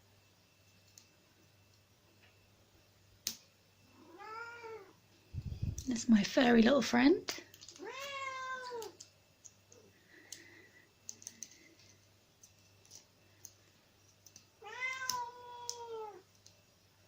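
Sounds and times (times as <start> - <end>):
cat meowing: 4.0 - 4.9, 7.8 - 8.9, 14.6 - 16.2.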